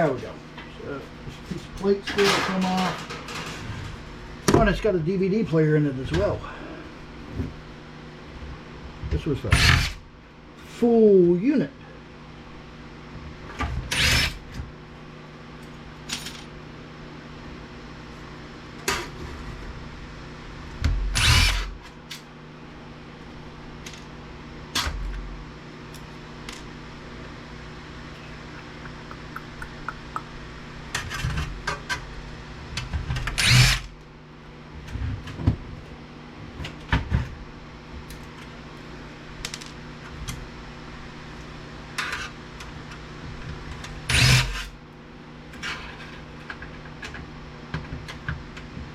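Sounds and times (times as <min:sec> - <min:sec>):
steady low hum: 0:00.0 - 0:34.9.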